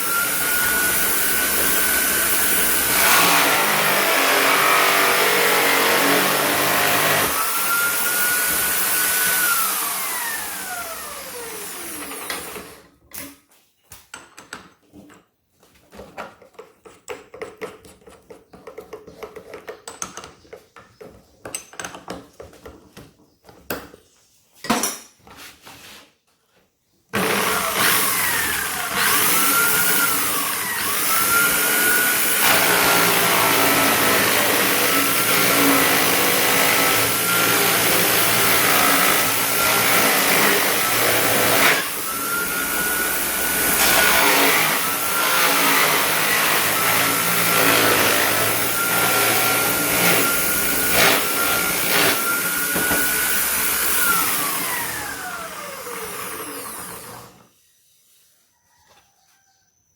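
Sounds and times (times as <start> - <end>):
electric drill whining: 0.0 - 12.9, 27.2 - 58.2.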